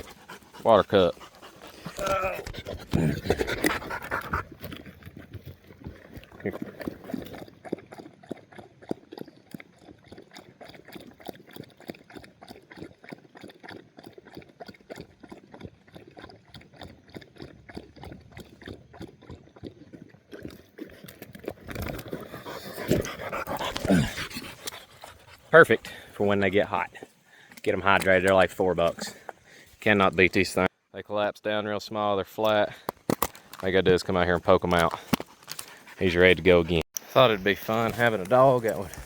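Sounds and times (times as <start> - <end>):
dog lapping water: 0.0 - 29.8, 34.5 - 39.0
rustling and movement: 32.9 - 39.0.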